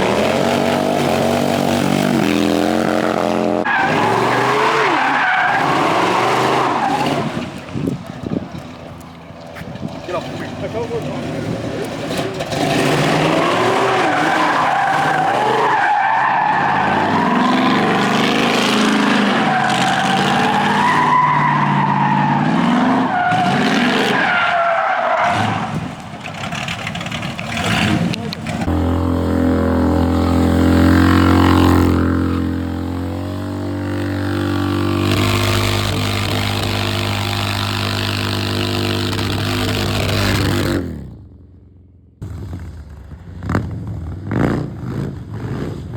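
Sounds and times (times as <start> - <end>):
motorcycle engine revving: 0.0 - 8.5, 16.5 - 21.1, 26.3 - 45.9
tyres squealing and skidding: 0.0 - 40.8.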